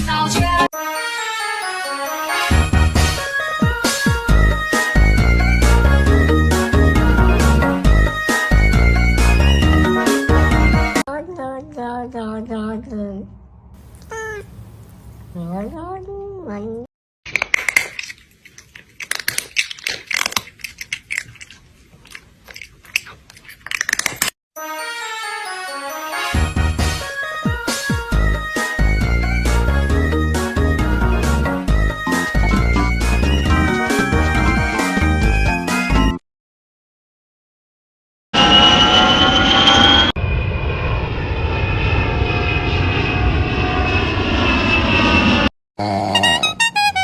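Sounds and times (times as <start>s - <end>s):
crunchy chewing: 13.8s - 15.7s, 17.3s - 24.4s
airplane engine drone: 38.4s - 45.5s
airplane engine rumble and whine: 38.4s - 45.5s.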